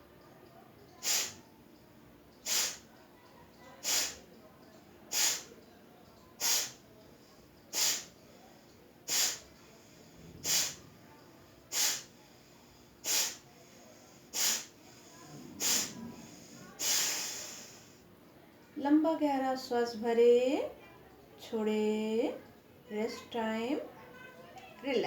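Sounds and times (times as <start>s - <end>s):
forceful hissing nasal exhalations: 1.0s - 1.4s, 2.4s - 2.9s, 3.8s - 4.3s, 5.1s - 5.5s, 6.4s - 6.8s, 7.7s - 8.2s, 9.1s - 10.8s, 11.7s - 18.0s.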